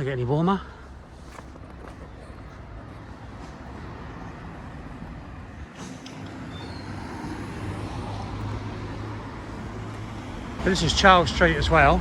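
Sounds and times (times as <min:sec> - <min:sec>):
heavy vehicle engine hum: 0:00.8 - 0:12.0
passing vehicles rushing: 0:00.9 - 0:12.0.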